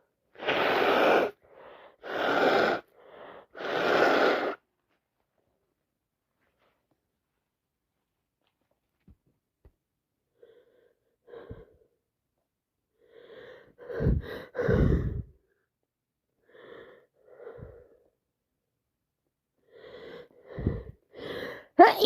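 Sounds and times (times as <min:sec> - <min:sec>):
woman gasping breaths: 0:13.1 - 0:15.5, 0:16.4 - 0:18.1, 0:19.7 - 0:21.8.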